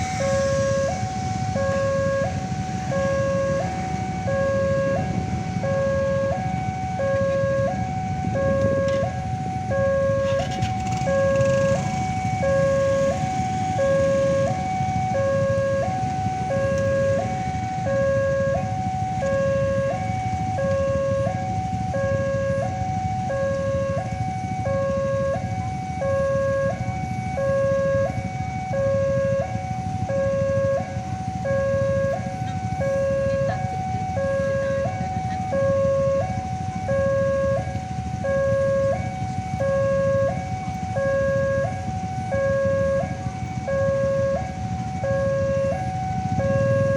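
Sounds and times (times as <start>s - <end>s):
level crossing siren hi-lo: 0.0s - 46.9s.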